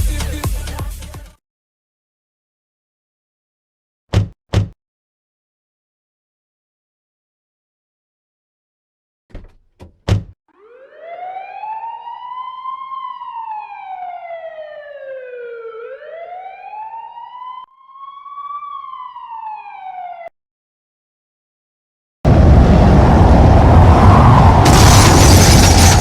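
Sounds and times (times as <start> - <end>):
warning siren wailing: 10.5 - 20.3.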